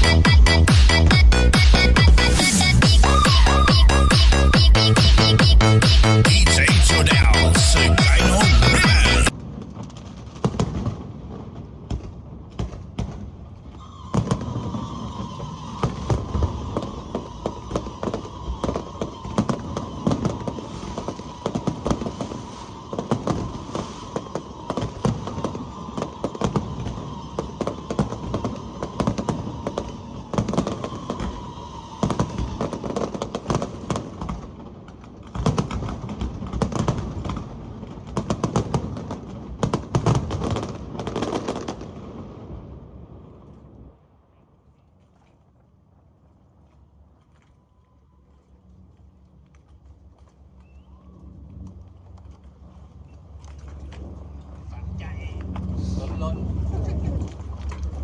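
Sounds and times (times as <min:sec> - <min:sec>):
steady high tone: 0:00.0 - 0:09.3
fireworks bangs and crackles: 0:00.0 - 0:44.2.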